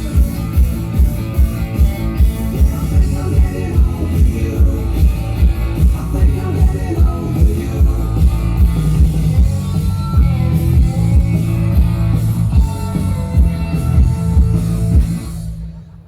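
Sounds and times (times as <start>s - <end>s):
rock music over sound system: 0.0s - 16.0s.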